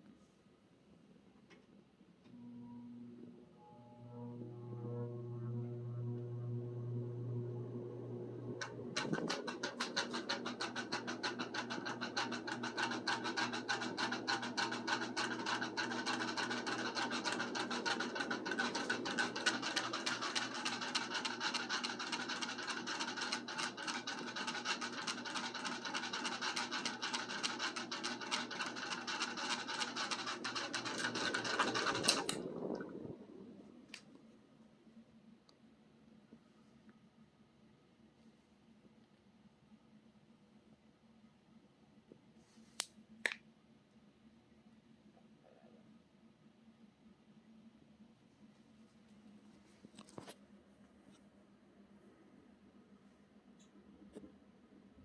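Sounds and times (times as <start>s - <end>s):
ceiling fan humming: 1.9s - 38.6s
scratchy rubbing: 9.0s - 32.4s.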